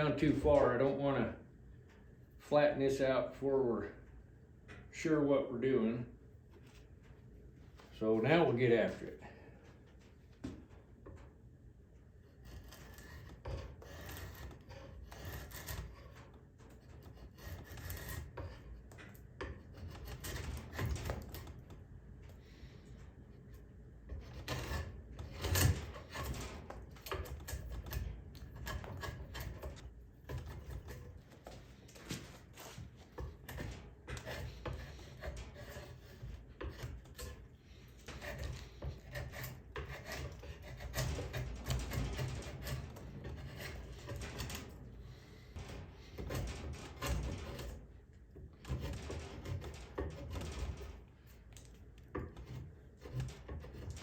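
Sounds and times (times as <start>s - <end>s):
hand tool shaving wood: 12.4s - 18.8s, 19.4s - 21.6s, 24.1s - 44.5s, 45.3s - 47.8s, 48.6s - 50.8s, 52.2s - 54.0s.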